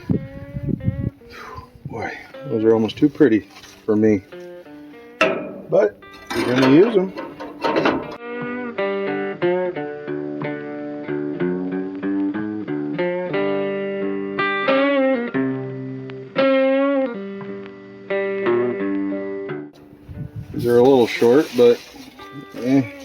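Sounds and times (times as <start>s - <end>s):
plucked guitar melody: 3.6s - 20.6s.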